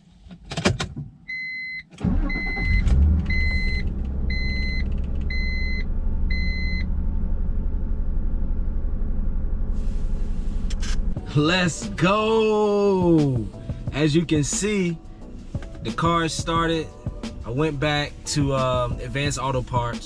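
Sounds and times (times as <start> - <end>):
dashboard warning chime beeps: 1.3 - 6.8
car engine starting and idling: 1.8 - 20.0.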